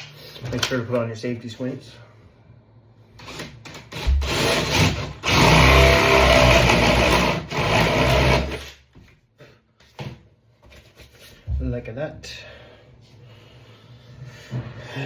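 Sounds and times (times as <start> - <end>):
electric drill boring into wood: 4.0 - 8.8.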